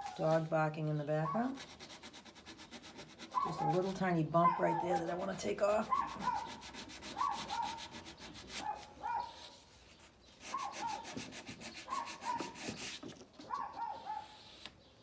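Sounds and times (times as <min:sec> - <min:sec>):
sandpaper rubbing on wood: 0:01.5 - 0:04.2, 0:04.9 - 0:13.1
small dog yapping: 0:03.4 - 0:03.7, 0:05.9 - 0:06.6, 0:07.2 - 0:07.8, 0:08.6 - 0:09.5, 0:13.4 - 0:14.4.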